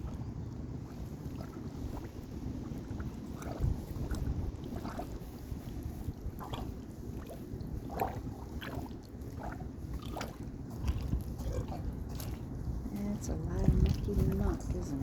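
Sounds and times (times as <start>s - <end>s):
footsteps squishing in mud: 5.8s - 15.0s.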